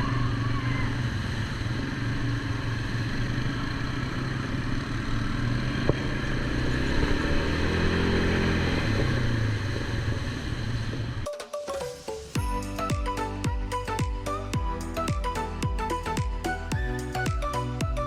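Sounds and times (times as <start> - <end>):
atv engine revving: 0.1 - 11.2.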